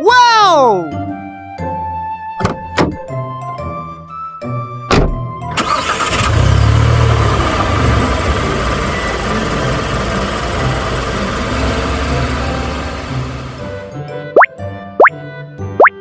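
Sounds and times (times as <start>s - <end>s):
car engine starting and running: 5.5s - 13.9s.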